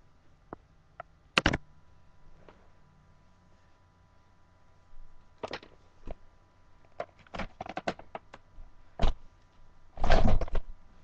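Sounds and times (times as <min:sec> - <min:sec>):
clicks and knocks of handling: 0:06.9 - 0:10.6.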